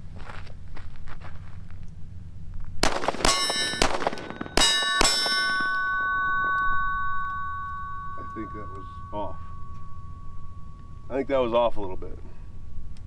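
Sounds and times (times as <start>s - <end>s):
gunshots: 2.8s - 5.8s
steel target clanging and ringing: 2.8s - 13.0s.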